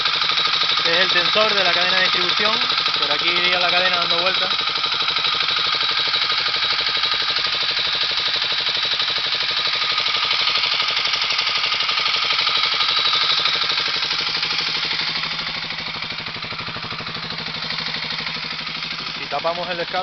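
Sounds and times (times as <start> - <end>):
motorcycle engine idling: 0.0 - 20.0.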